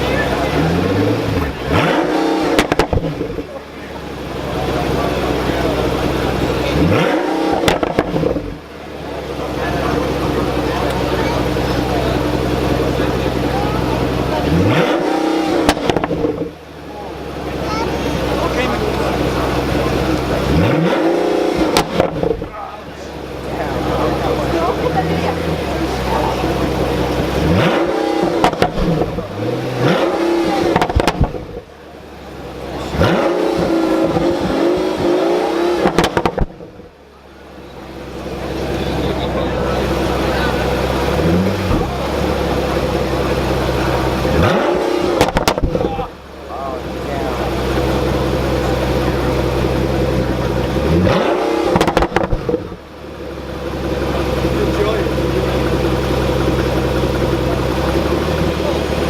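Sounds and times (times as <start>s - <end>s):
exhaust pops and crackles: 0.0s - 16.7s, 17.3s - 59.0s
car engine revving: 0.0s - 59.0s.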